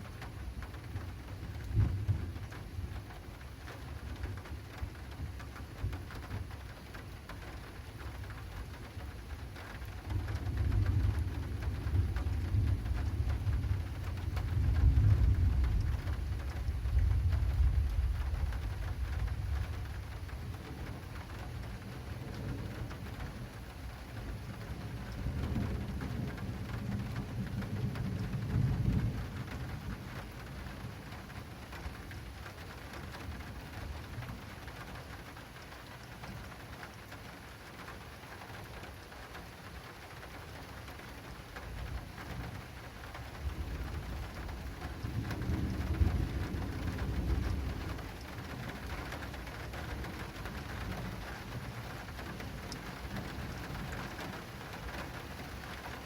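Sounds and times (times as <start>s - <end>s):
heavy rain drumming on awning: 0.0s - 56.0s
rolling thunder: 1.6s - 2.6s, 10.1s - 23.6s, 24.3s - 31.1s, 43.3s - 54.4s.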